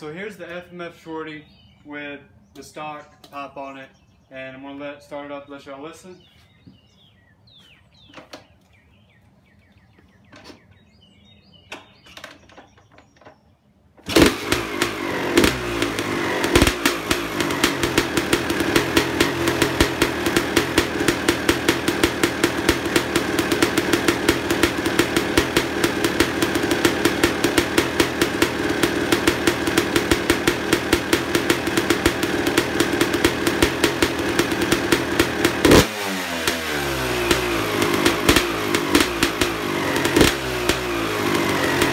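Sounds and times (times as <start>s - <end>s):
dirt bike engine running: 14.0s - 41.9s.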